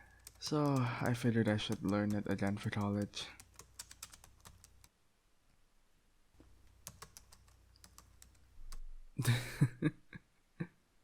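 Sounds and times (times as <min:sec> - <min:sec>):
typing on computer keyboard: 0:00.0 - 0:04.9, 0:06.7 - 0:08.9.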